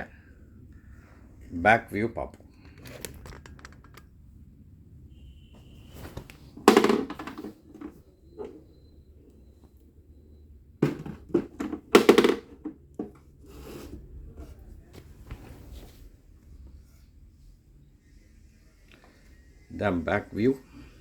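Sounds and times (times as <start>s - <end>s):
boombox handling noise: 2.4s - 4.1s, 6.0s - 8.0s.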